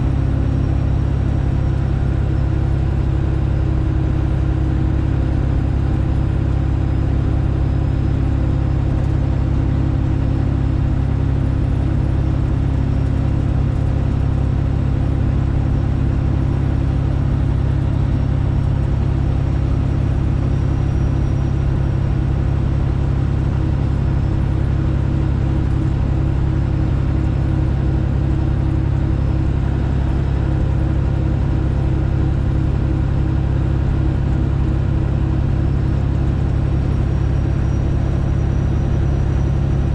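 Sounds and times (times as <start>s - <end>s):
diesel truck engine droning: 0.0s - 39.9s.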